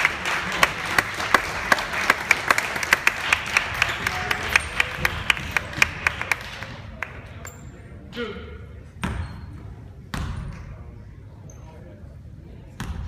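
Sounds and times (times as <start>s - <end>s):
close sharp hand clapping: 0.0s - 7.2s
spectators applauding: 0.0s - 7.3s.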